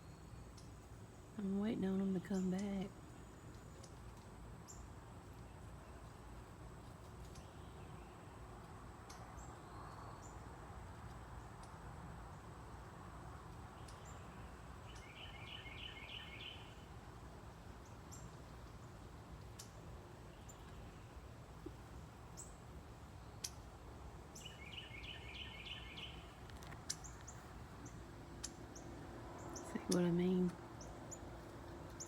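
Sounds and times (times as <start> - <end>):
faint outdoor background noise: 0.0 - 32.0
small bird chirping: 13.8 - 16.8, 23.2 - 23.7, 24.3 - 32.0.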